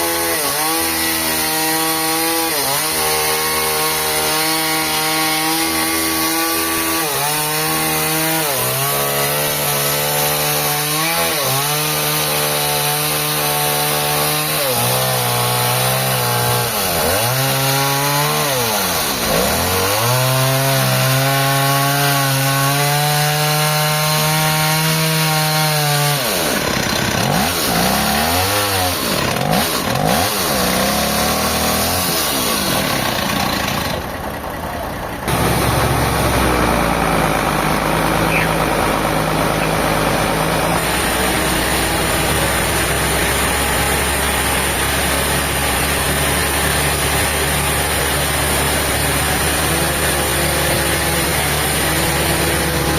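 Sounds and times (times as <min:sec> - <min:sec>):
engine-driven saw cutting wood: 0:00.0 - 0:52.9.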